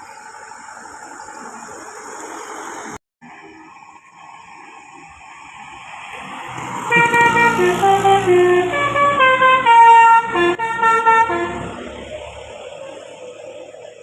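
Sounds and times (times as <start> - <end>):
bus musical horn playing a tune: 6.8 - 12.1.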